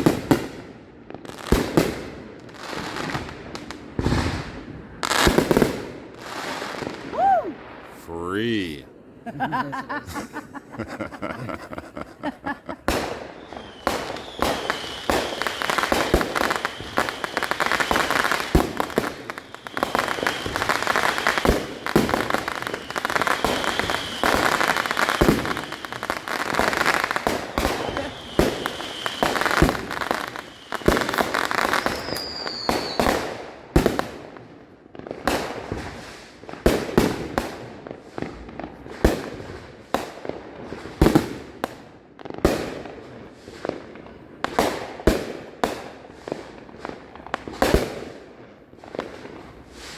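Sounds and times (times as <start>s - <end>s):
fireworks bangs and crackling: 0.0s - 7.9s, 12.0s - 49.9s
falling firework whistle: 19.6s - 20.6s, 31.7s - 33.1s.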